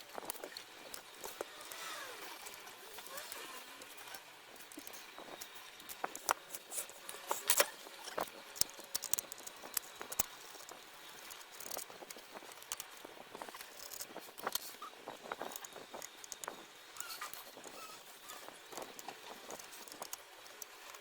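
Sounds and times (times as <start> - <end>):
small hard objects clicking: 0.0 - 4.0, 4.6 - 14.7, 18.7 - 21.0.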